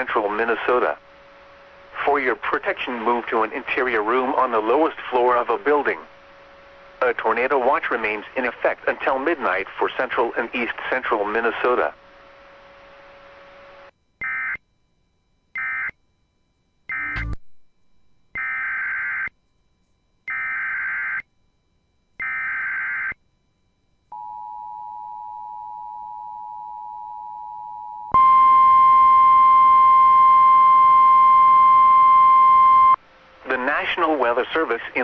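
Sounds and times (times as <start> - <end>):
steady warning alarm tone: 16.8 - 17.4, 18.4 - 21.3, 22.0 - 25.6
two-tone attention signal: 16.9 - 17.4.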